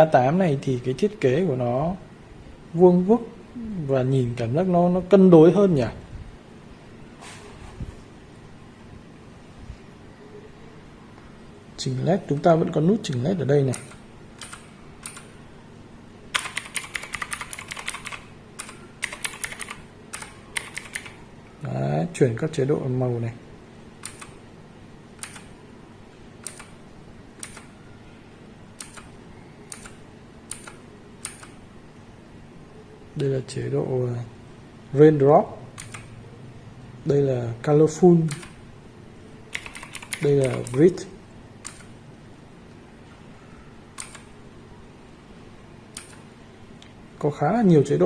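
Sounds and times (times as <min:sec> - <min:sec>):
mechanical keyboard key clicks: 0:25.2 - 0:25.5, 0:26.4 - 0:26.7, 0:27.4 - 0:27.7, 0:28.8 - 0:29.1, 0:29.7 - 0:31.5, 0:39.5 - 0:40.8, 0:44.0 - 0:44.3, 0:46.0 - 0:46.2.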